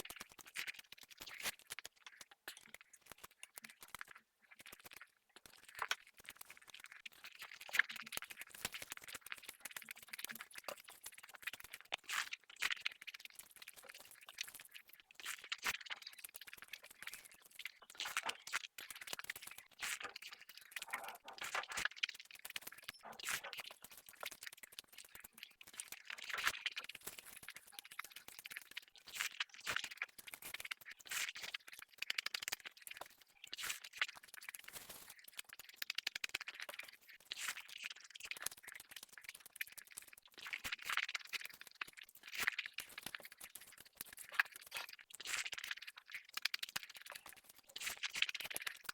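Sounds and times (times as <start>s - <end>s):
chewing and mouth sounds: 0.0s - 48.9s.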